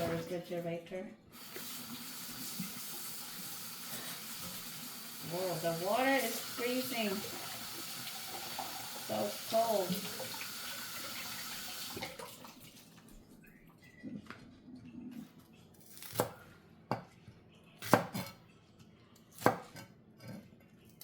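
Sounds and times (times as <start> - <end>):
running tap water: 1.3 - 13.1
knife chopping on cutting board: 17.8 - 18.4, 19.4 - 19.9.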